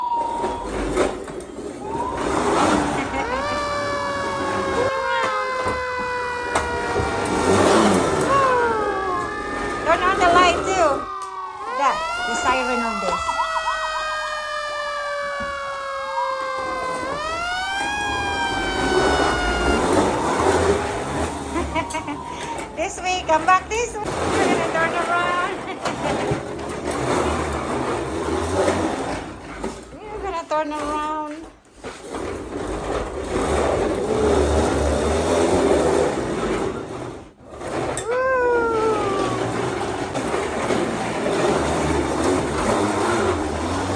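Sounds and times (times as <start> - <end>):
fire truck siren wailing: 0.0 - 1.2, 1.8 - 25.7, 38.0 - 43.9
rough noise: 0.0 - 31.1, 31.8 - 43.9
plastic wheels rumbling on ground: 0.0 - 43.9
toy electric motor and gearbox: 0.0 - 43.9.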